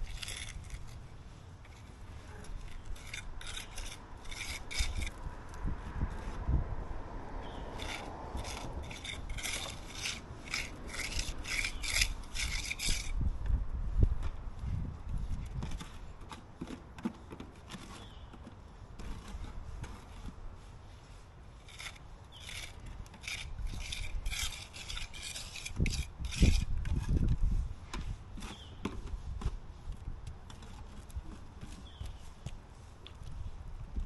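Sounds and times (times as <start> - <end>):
scraping and rubbing on roofing: 0.0 - 6.5, 7.4 - 13.4, 15.1 - 33.6.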